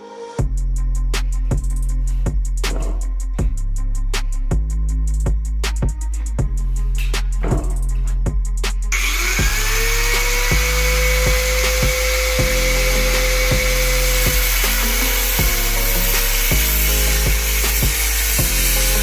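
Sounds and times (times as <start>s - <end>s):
background music with beat: 0.0s - 19.0s
power tool motor whining: 9.0s - 19.0s.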